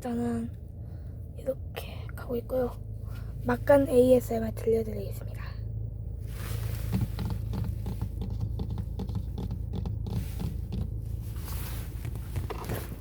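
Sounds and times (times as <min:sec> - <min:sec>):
car driving rumble: 0:00.0 - 0:13.0
hand scratching and rustling: 0:06.2 - 0:13.0.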